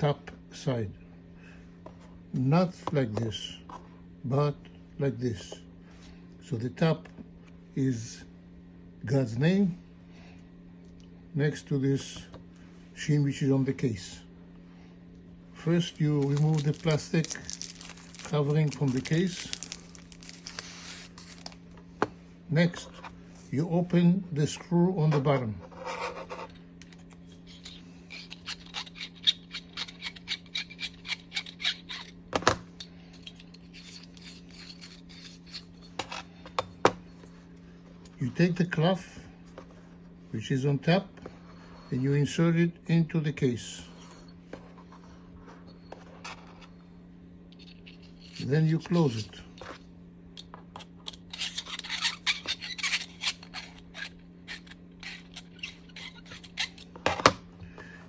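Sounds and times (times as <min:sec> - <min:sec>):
steady low hum: 0:00.0 - 0:58.0
screwdriver ticking and scraping: 0:26.4 - 0:32.1
screwdriver scraping a small screw: 0:27.4 - 0:32.2, 0:33.1 - 0:35.8, 0:50.8 - 0:56.9.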